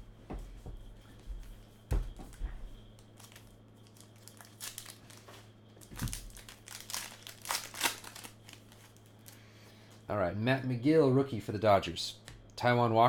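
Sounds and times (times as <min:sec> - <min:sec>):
foil wrappers crinkling and tearing: 0:03.0 - 0:09.4.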